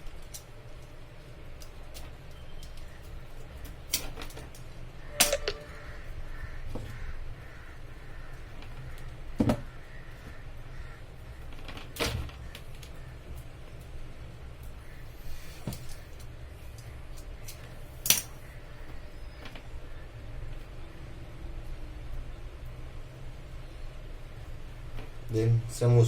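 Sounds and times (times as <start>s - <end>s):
crow cawing: 5.5s - 11.1s.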